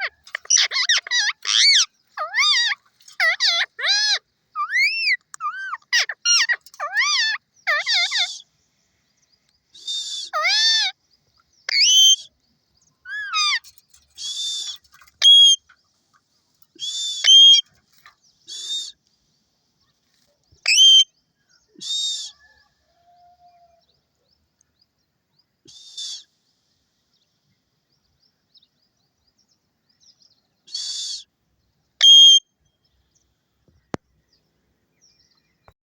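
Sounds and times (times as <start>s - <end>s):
parrot whistling and screeching: 0.3s - 8.4s, 9.8s - 10.9s, 11.7s - 12.3s, 13.1s - 13.6s, 14.2s - 15.6s, 16.8s - 17.7s, 20.6s - 21.1s, 30.7s - 31.2s, 32.0s - 32.4s.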